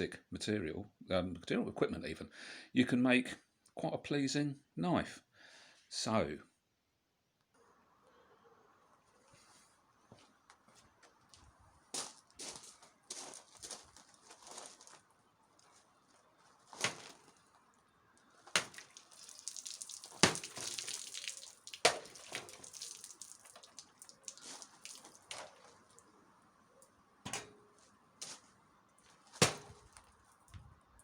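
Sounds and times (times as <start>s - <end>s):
dagger chopping hits: 29.4s - 29.8s.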